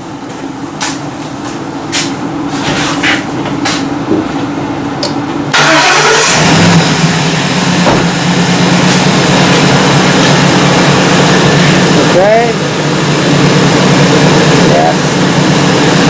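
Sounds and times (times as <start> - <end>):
engine starting and idling: 5.5 - 16.0.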